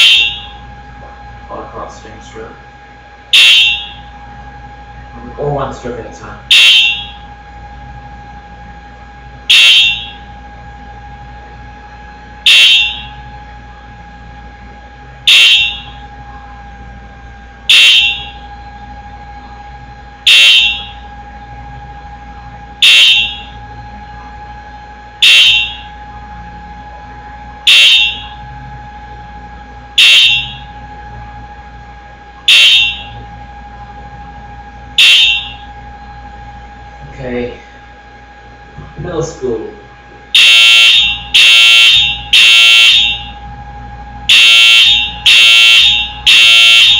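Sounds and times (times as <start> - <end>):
fire alarm bell strikes: 0.0 - 1.9, 3.3 - 4.1, 6.5 - 7.3, 9.5 - 10.3, 12.4 - 13.3, 15.2 - 16.0, 17.7 - 18.5, 20.2 - 21.1, 22.8 - 23.6, 25.2 - 26.0, 27.6 - 28.4, 30.0 - 30.8, 32.5 - 33.2, 35.0 - 35.8, 40.3 - 43.4, 44.3 - 46.9.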